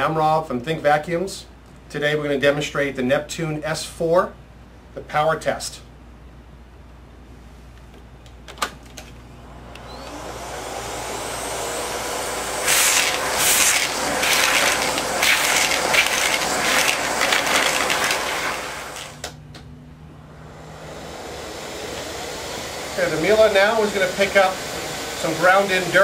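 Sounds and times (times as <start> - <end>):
vacuum cleaner motor running: 9.4 - 19.3, 20.2 - 26.0.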